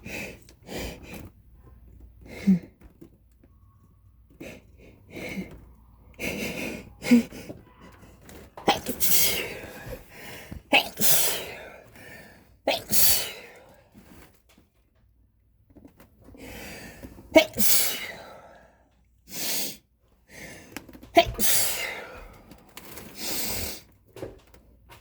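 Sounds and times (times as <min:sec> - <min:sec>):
person sneezing: 0:08.6 - 0:10.1, 0:10.7 - 0:11.8, 0:12.7 - 0:13.8, 0:17.4 - 0:18.4, 0:21.2 - 0:22.2.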